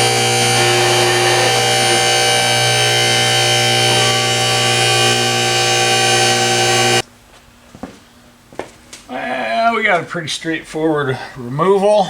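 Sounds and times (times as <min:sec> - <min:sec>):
electric motor buzz with hum: 0:00.0 - 0:07.0.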